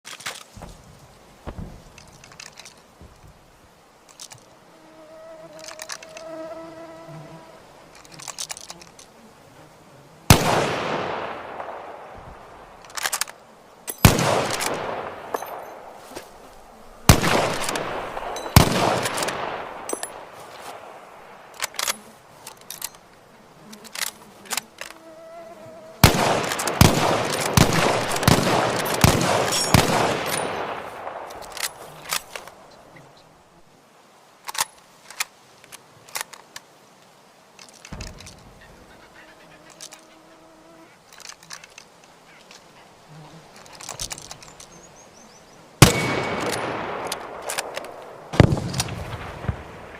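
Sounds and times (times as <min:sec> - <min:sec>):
gunshot blasts: 0:10.3 - 0:12.2, 0:17.1 - 0:19.9, 0:26.0 - 0:31.3, 0:45.8 - 0:47.5, 0:48.3 - 0:49.9
sharp clicks: 0:45.8 - 0:49.0.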